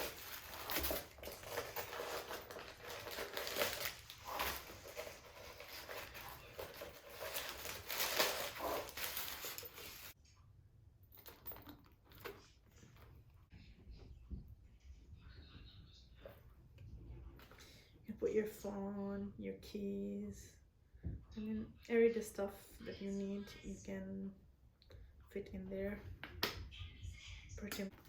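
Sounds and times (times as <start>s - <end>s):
packing material crinkling: 0.0s - 10.2s.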